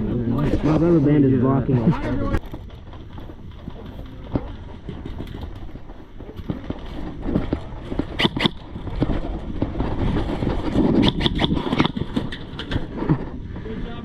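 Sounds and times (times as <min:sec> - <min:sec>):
wind rumble: 0:02.4 - 0:14.0
airsoft gun shots: 0:08.2 - 0:08.6.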